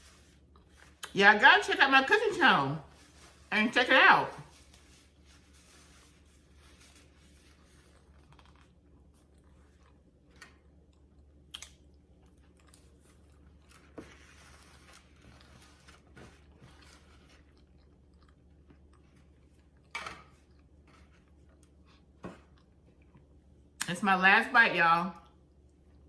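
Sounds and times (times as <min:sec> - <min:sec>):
person chewing food: 0:07.8 - 0:23.5.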